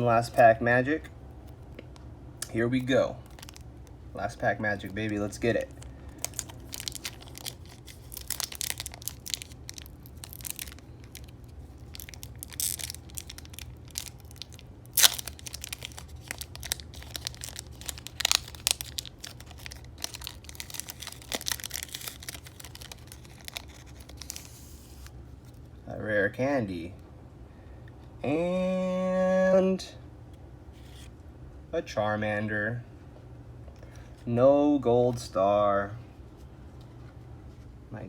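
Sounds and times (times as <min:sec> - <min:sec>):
plastic wrapper tearing and crinkling: 0:02.8 - 0:04.0, 0:04.8 - 0:25.1.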